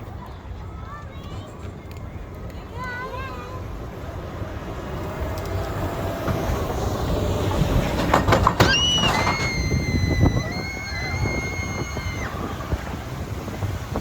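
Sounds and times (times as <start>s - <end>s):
roller coaster clatter: 0.0s - 14.0s
roller coaster rumbling on track: 0.0s - 14.0s
high steady squeal: 5.5s - 14.0s.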